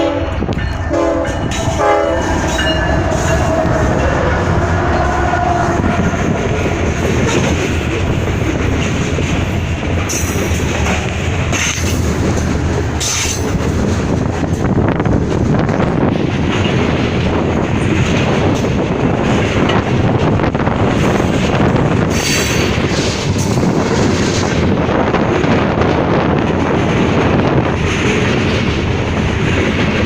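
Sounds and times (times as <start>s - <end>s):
locomotive horn: 0.0s - 6.4s
train wheels clattering on rails: 0.0s - 30.0s.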